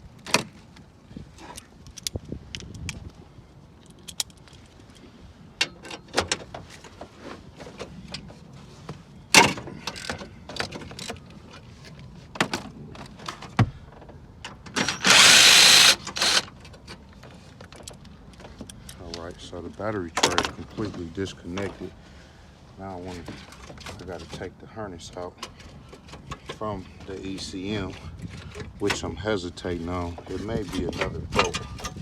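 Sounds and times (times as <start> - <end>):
loud steady burst: 14.8 - 16.5.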